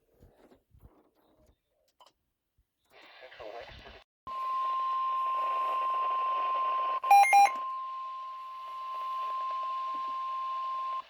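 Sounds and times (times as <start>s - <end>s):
steady warning alarm tone: 7.0s - 11.0s
short loud beeps: 7.1s - 7.6s.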